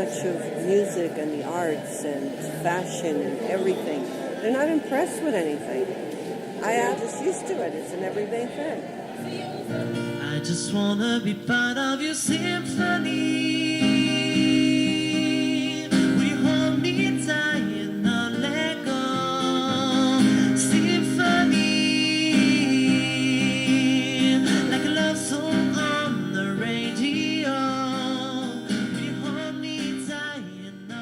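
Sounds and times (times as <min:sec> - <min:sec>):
guitar accompaniment: 0:09.1 - 0:31.0
person singing with vibrato: 0:09.7 - 0:31.0.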